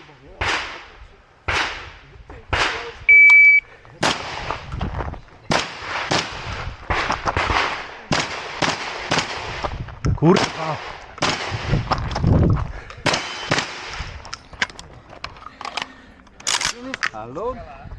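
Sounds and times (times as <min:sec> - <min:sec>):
gunshots: 0:00.3 - 0:03.0, 0:04.0 - 0:04.7, 0:05.5 - 0:12.0, 0:13.0 - 0:14.2
shotgun firing string of shots: 0:00.3 - 0:03.0, 0:04.0 - 0:04.7, 0:05.5 - 0:12.0, 0:13.0 - 0:14.2
shot timer beep: 0:03.1 - 0:03.6.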